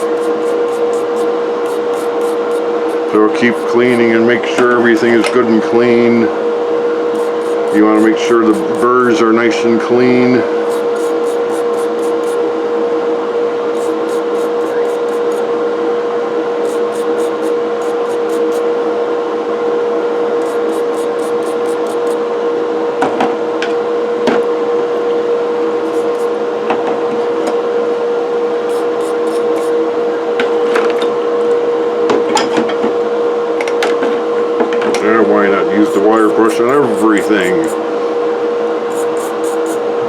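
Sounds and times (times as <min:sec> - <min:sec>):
brush scrubbing metal burrs: 0:00.0 - 0:04.2, 0:07.1 - 0:09.2, 0:10.6 - 0:12.4, 0:13.7 - 0:15.5, 0:16.6 - 0:18.7, 0:20.2 - 0:22.2, 0:25.8 - 0:26.3, 0:28.7 - 0:29.8, 0:35.7 - 0:37.8, 0:38.9 - 0:39.8
steady hum: 0:00.0 - 0:06.2, 0:06.9 - 0:12.8, 0:13.6 - 0:15.7, 0:16.4 - 0:18.9, 0:20.1 - 0:22.3, 0:25.8 - 0:26.6, 0:28.6 - 0:29.9, 0:35.2 - 0:37.9, 0:38.8 - 0:40.0.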